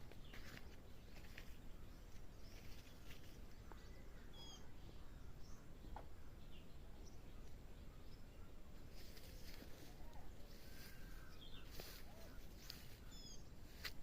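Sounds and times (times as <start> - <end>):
faint outdoor ambience: 0.0 - 14.0.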